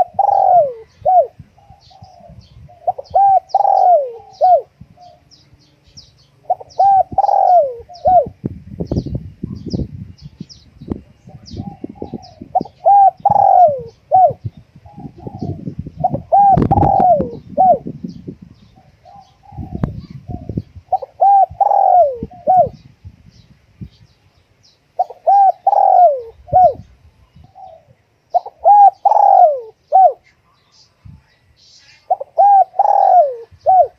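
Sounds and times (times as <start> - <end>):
dove cooing: 0.0 - 5.3, 6.4 - 8.4, 11.2 - 22.8, 25.0 - 30.2, 32.1 - 33.9
small birds chirping: 0.0 - 33.9.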